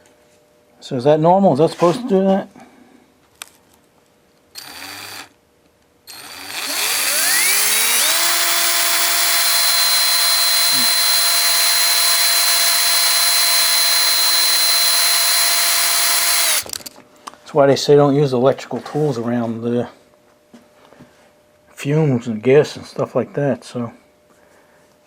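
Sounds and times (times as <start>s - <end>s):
cordless drill motor whining: 4.6s - 5.3s, 6.1s - 16.9s.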